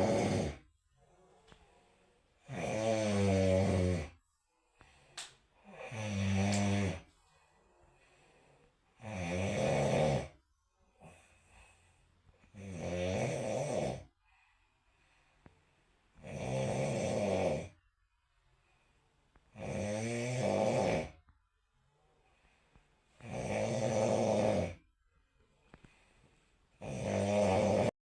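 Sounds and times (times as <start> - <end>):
person snoring: 0.0 - 0.7, 1.3 - 4.2, 4.8 - 7.1, 8.0 - 10.4, 12.4 - 14.1, 16.2 - 17.8, 19.5 - 21.2, 23.2 - 24.9, 26.7 - 28.0
quiet breathing: 0.0 - 27.9.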